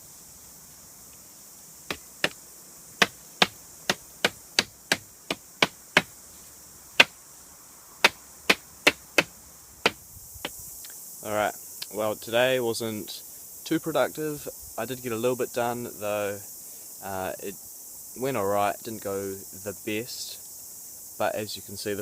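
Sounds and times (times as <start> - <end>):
chopping wood: 1.9 - 2.4, 3.0 - 6.1, 8.0 - 10.6.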